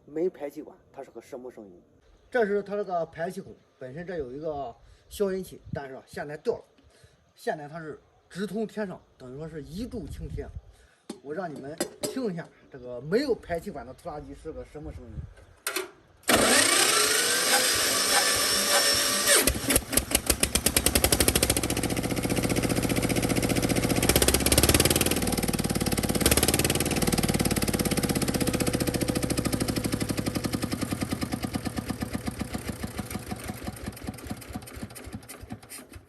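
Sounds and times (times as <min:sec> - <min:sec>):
starter motor whining: 0:16.2 - 0:36.0
diesel engine exhaust beats: 0:19.6 - 0:34.8.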